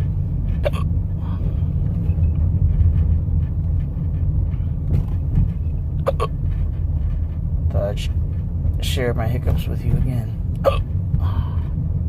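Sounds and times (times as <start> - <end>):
steady low rumble: 0.0 - 12.0
person hiccuping: 0.6 - 0.9, 6.0 - 6.3, 10.6 - 10.9.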